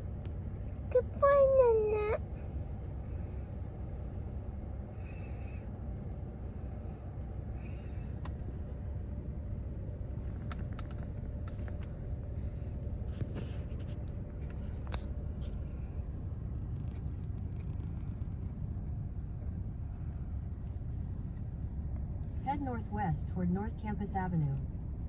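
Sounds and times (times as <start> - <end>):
car cabin rumble: 0.0 - 25.0
faint clicks: 8.2 - 8.4.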